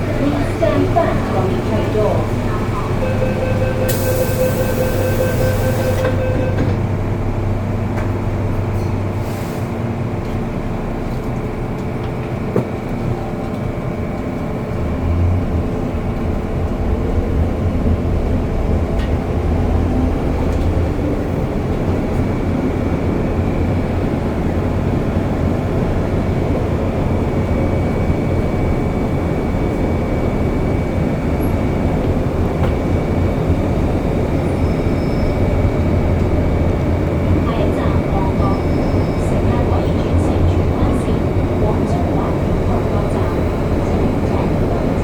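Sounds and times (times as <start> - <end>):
train motors and wheels rumbling: 0.0 - 45.0
door-closing warning beeps: 2.6 - 6.8.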